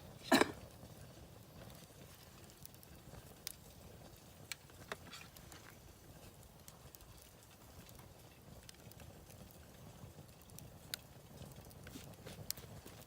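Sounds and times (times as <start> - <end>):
campfire crackling: 0.0 - 13.0.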